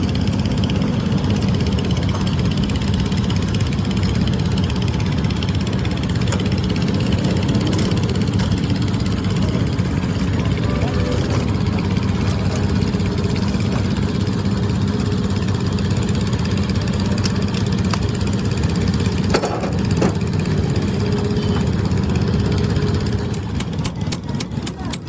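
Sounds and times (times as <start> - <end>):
sharp clicks and knocks: 0.0 - 14.3
motor running steadily: 0.0 - 25.0.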